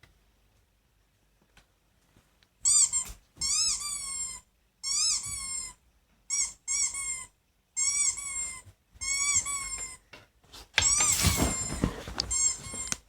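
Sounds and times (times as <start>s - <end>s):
squeaky rubber toy squeaking: 2.6s - 10.0s.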